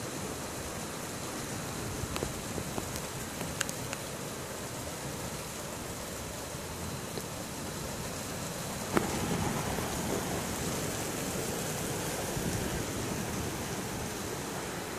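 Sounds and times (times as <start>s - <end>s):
hail and rain falling: 8.8s - 14.9s.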